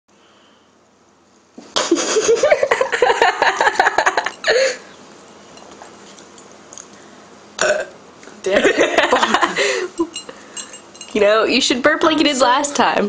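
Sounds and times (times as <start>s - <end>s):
women laughing loudly: 1.8s - 4.8s, 8.5s - 10.0s.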